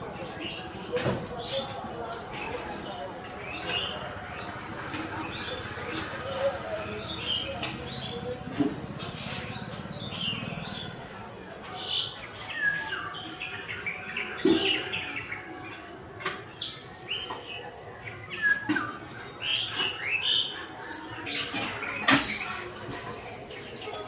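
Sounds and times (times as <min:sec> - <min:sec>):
songbirds chirping: 0:00.0 - 0:24.0.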